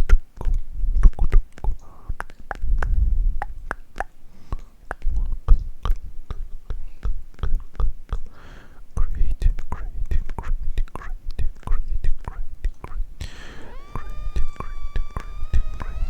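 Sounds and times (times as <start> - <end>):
sharp mouth clicks and smacks: 0.0 - 8.3.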